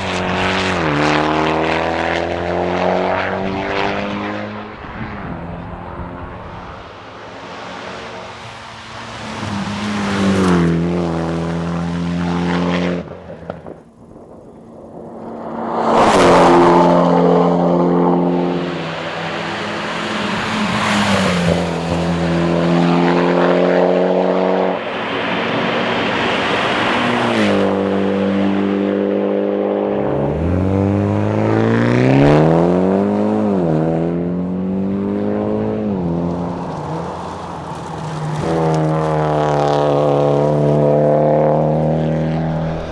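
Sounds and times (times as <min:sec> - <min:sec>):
car engine revving hard: 0:15.8 - 0:42.9.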